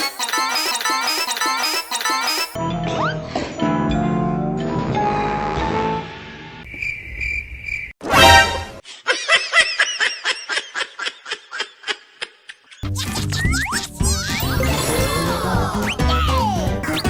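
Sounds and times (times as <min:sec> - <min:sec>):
short high beeping tone: 0:00.0 - 0:02.6.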